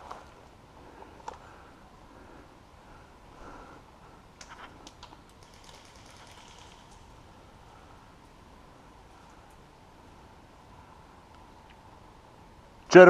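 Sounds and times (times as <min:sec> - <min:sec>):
faint clicks: 0:01.2 - 0:01.5, 0:04.4 - 0:07.1, 0:11.3 - 0:11.8.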